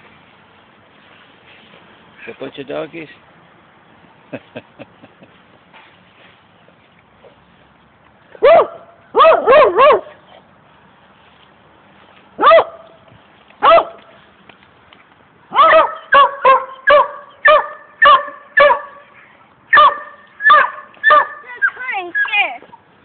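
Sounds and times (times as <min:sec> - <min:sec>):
dog barking: 0:08.4 - 0:10.2, 0:12.4 - 0:12.8, 0:13.6 - 0:14.0, 0:15.5 - 0:19.1, 0:19.7 - 0:22.3.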